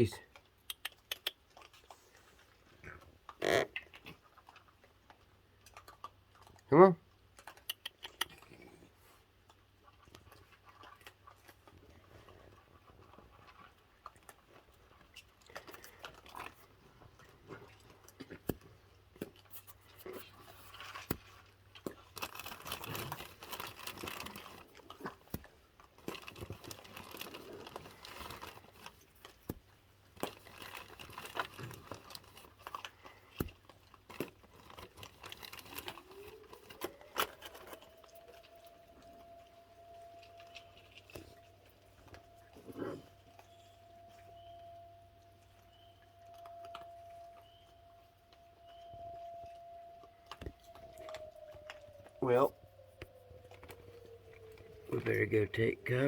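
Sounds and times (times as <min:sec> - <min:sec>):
raccoons chewing cookies: 0:00.0 - 0:56.0
small clicks and crinkling: 0:00.1 - 0:56.0
siren winding up: 0:35.6 - 0:56.0.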